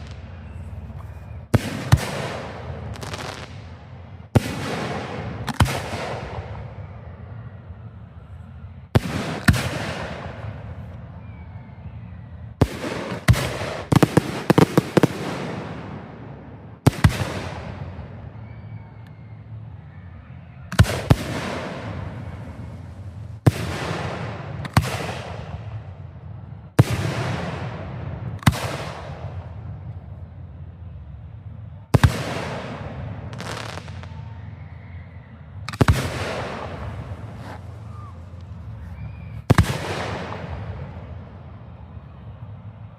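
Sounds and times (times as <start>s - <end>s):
echoing rumble: 0.0s - 42.9s
firework shells exploding: 35.6s - 41.1s.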